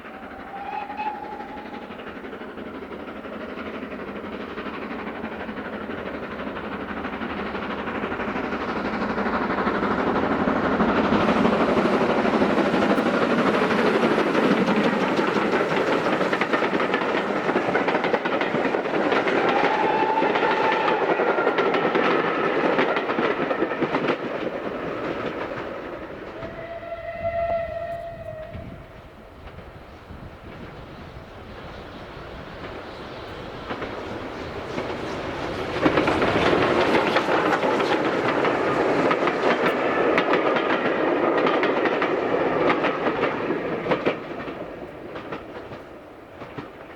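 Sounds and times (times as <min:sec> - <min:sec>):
train whistle: 0:00.0 - 0:02.1, 0:19.1 - 0:21.7, 0:26.3 - 0:29.2
steam train passing: 0:00.0 - 0:46.9.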